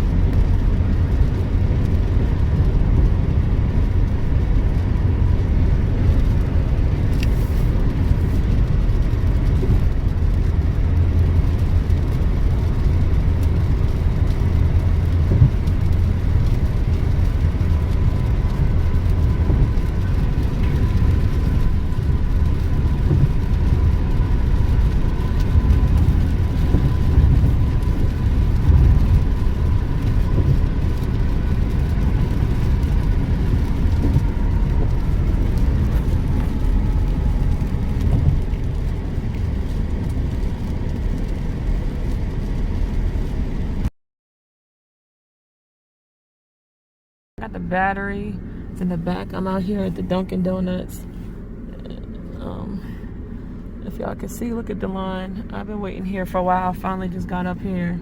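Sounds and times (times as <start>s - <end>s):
car road and engine rumble: 0.0s - 43.9s, 47.4s - 58.0s.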